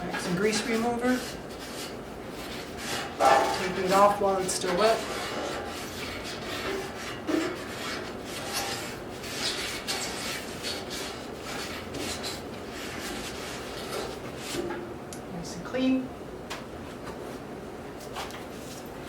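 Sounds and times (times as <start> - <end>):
rag rubbing metal: 0.0 - 14.7.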